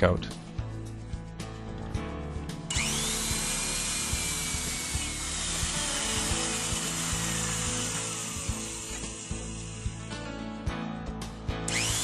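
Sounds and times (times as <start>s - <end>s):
background music: 0.0s - 12.0s
power drill cutting wood: 2.7s - 10.3s, 11.7s - 12.0s.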